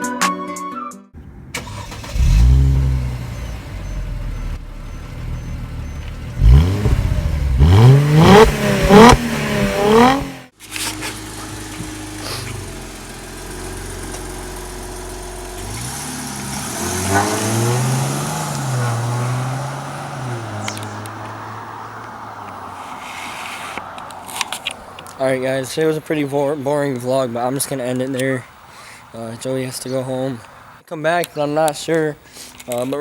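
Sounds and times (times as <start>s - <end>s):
car engine revving: 1.2s - 22.8s.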